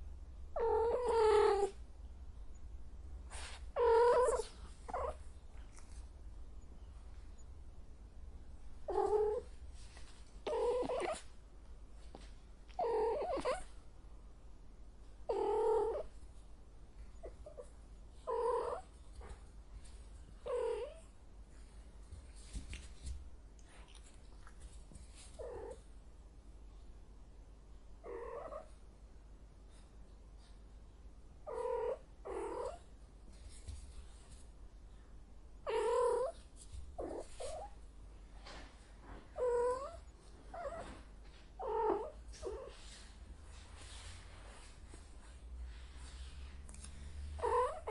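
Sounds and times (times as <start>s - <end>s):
cat yowling: 3.8s - 5.2s.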